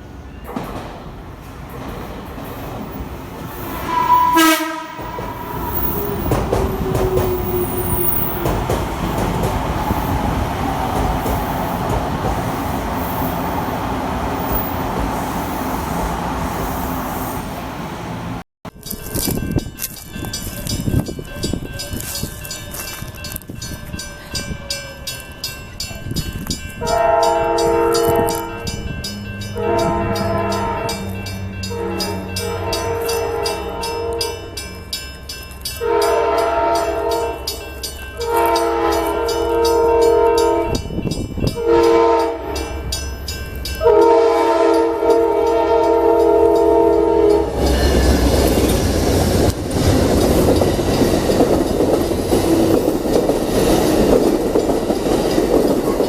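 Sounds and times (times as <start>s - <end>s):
moving train rumble and clicking: 0.0s - 56.0s
train horn blasts: 3.7s - 8.4s, 26.8s - 28.8s, 29.5s - 34.5s, 35.8s - 37.6s, 38.2s - 40.8s, 41.5s - 42.9s, 43.8s - 48.3s.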